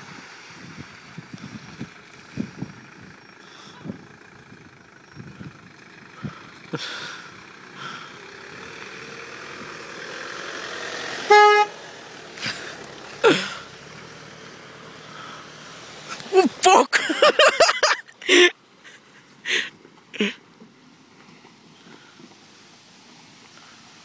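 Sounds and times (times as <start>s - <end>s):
rushing vehicle noise: 0.0s - 24.0s
vehicle horn toot: 11.2s - 11.8s.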